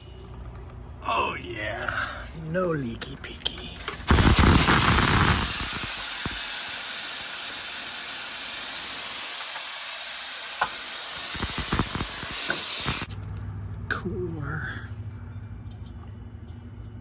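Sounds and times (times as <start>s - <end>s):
pressurized gas hissing from valve: 3.8s - 13.1s.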